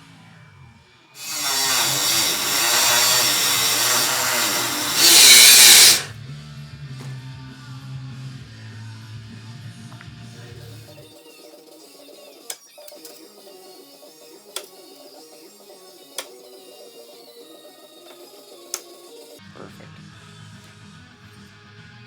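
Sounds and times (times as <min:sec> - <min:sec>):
power tool cutting sheet metal: 0:01.2 - 0:06.1.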